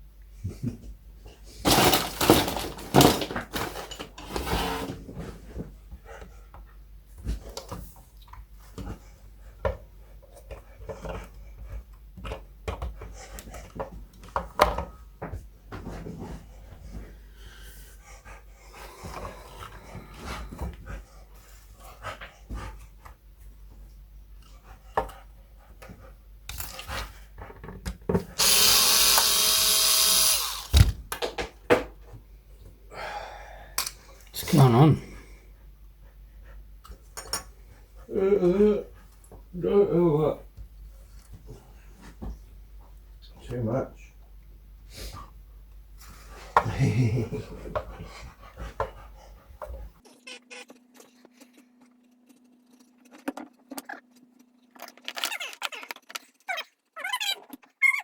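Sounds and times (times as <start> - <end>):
small power tool motor: 28.4 - 31.0.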